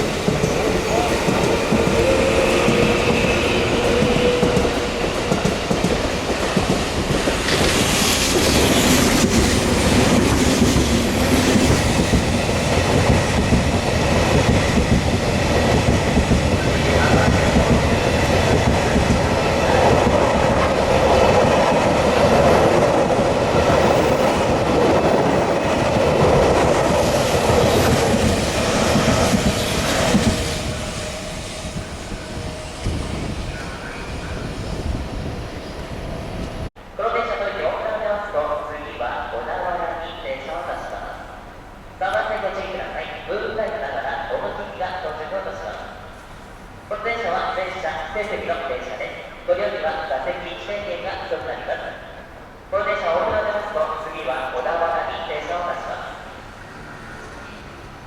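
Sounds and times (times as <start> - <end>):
train wheels on rails: 0.0 - 36.7.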